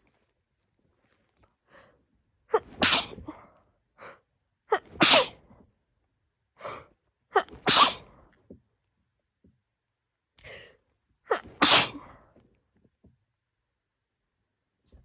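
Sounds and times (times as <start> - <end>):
woman sneezing: 2.5 - 3.3, 4.7 - 5.4, 7.4 - 8.1, 11.3 - 12.1.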